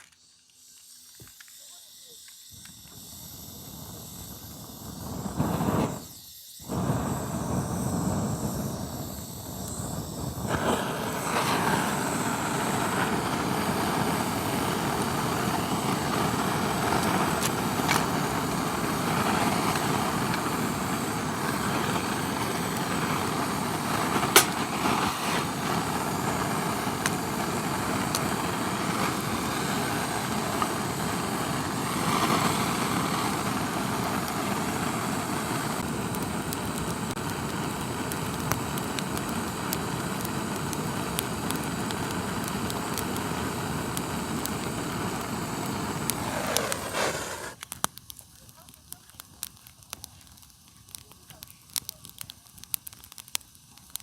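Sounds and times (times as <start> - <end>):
campfire rushing hiss: 0.0 - 54.0
firewood popping: 6.7 - 54.0.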